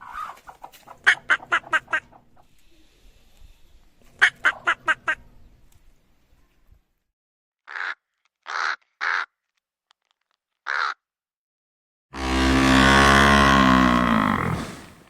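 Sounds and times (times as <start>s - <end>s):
harsh bird calls: 12.2s - 15.0s
low-pitched animal call: 12.2s - 15.0s.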